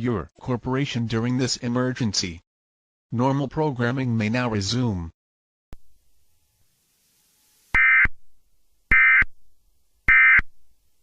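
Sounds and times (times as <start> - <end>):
digital screech data tones: 7.8 - 8.1.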